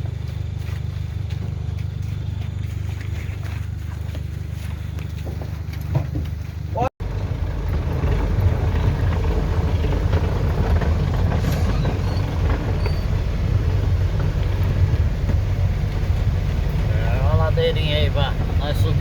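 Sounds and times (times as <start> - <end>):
truck engine droning: 4.3 - 19.0.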